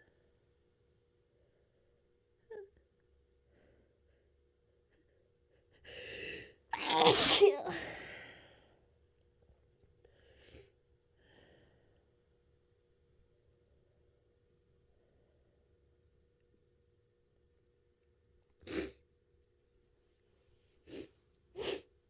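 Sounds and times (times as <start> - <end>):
person sneezing: 6.8 - 8.0
person inhaling before sneeze: 6.8 - 8.2
faint sniffs: 20.2 - 21.9.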